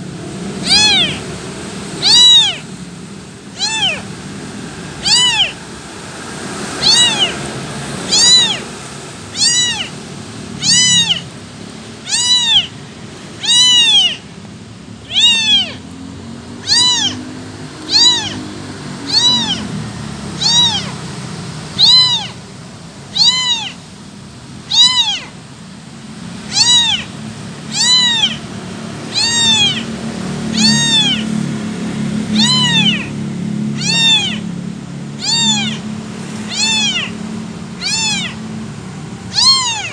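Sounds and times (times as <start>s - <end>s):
kitten meowing: 0.6s - 1.4s, 2.0s - 2.7s, 3.5s - 4.3s, 4.9s - 5.8s, 6.6s - 25.6s, 26.3s - 39.9s.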